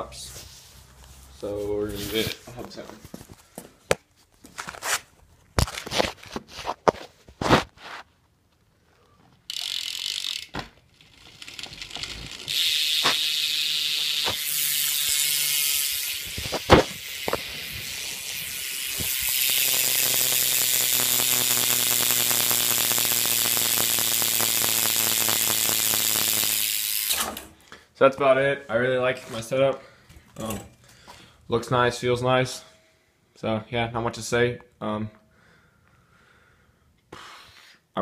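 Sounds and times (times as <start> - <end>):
bicycle hub ratchet buzzing: 9.5 - 27.6.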